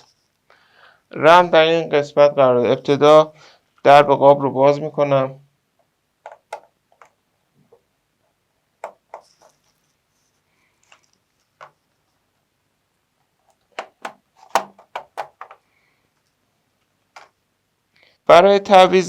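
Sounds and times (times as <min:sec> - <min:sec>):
plastic cover clicks: 0:13.5 - 0:15.6.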